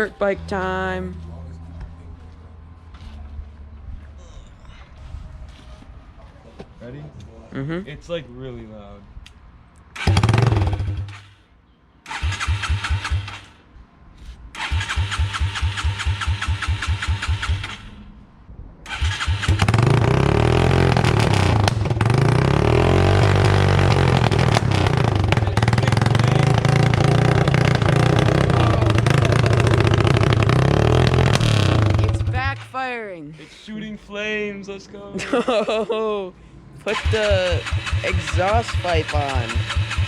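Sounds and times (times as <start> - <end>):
loud motorcycle engine running: 10.0 - 11.3, 19.4 - 32.6, 36.9 - 40.0
motorcycle engine cranking: 10.0 - 11.3, 12.1 - 13.6, 14.6 - 17.9, 18.9 - 20.2, 20.9 - 32.4, 36.9 - 40.0.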